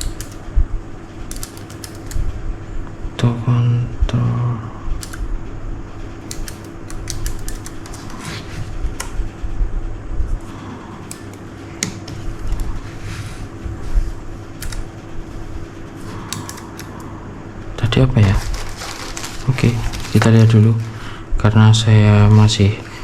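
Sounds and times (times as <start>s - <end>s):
steady low hum: 0.0s - 23.0s
mechanical keyboard key clicks: 1.3s - 2.2s, 5.0s - 5.2s, 6.3s - 8.0s, 14.6s - 14.8s, 16.3s - 16.9s.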